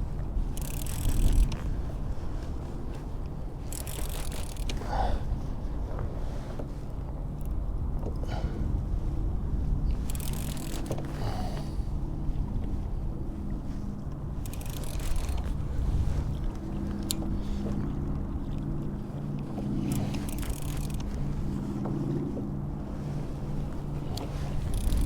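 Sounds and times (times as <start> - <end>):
steady low rumble: 0.0 - 25.0
wind: 0.0 - 25.0
fishing reel drag ratcheting: 0.5 - 1.7, 3.6 - 4.9, 10.0 - 11.7, 14.4 - 15.6, 19.8 - 21.2, 24.5 - 25.0.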